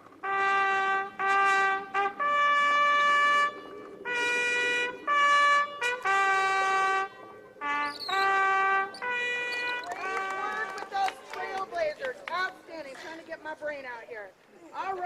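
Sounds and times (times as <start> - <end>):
bugle call on brass horn: 0.0 - 11.4.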